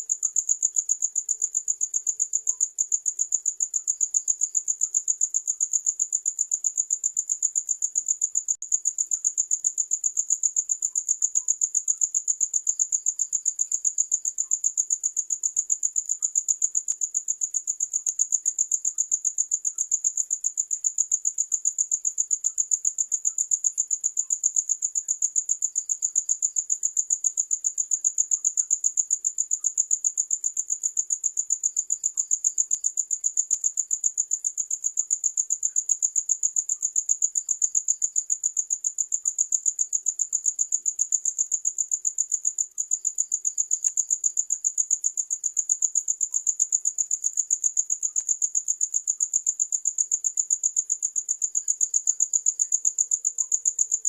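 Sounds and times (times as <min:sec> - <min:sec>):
crickets trilling: 0:36.6 - 0:54.0.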